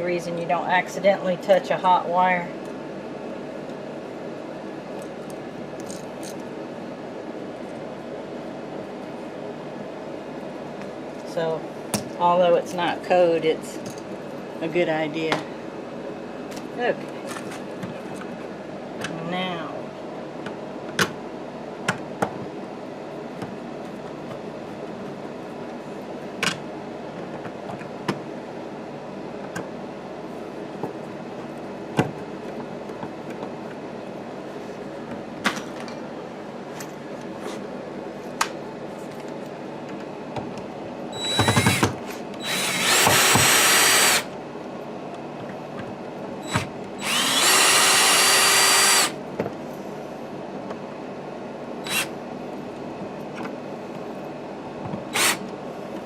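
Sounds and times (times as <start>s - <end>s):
cordless drill running: 41.2s - 41.8s, 42.4s - 44.3s, 46.5s - 49.2s, 51.8s - 52.1s, 55.1s - 55.4s.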